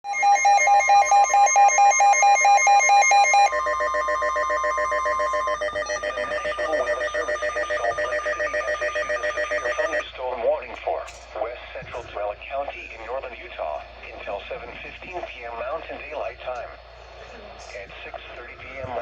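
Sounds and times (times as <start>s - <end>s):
warbling electronic alert tone: 0.1s - 10.0s.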